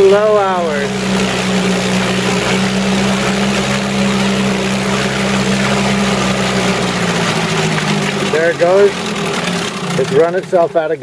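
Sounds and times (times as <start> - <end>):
outboard motor running: 0.0 - 11.0.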